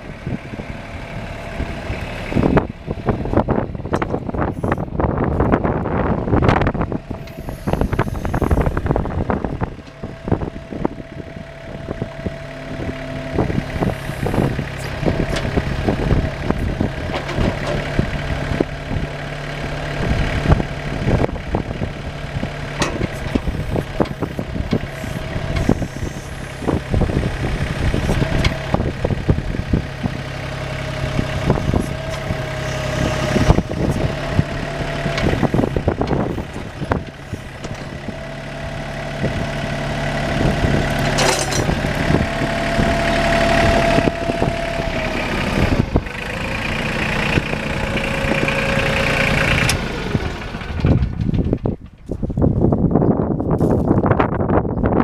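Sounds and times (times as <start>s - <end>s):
tractor diesel engine running: 0.0s - 55.0s
clanks and knocks: 16.5s - 18.0s, 22.8s - 24.9s, 41.0s - 42.3s.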